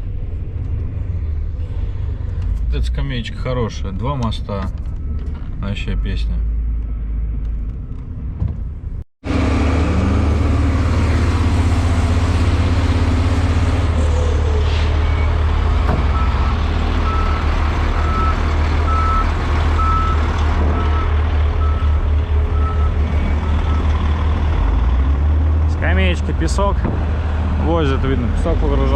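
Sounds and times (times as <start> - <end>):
heavy truck engine running: 6.5 - 28.9
reversing alarm beeping: 16.1 - 20.2, 20.8 - 23.9.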